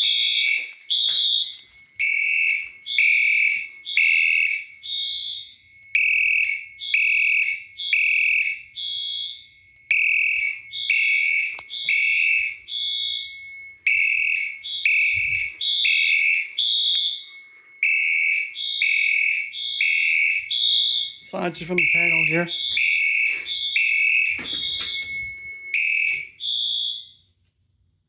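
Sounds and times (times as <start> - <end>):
fire alarm horns sounding: 0.0 - 27.4.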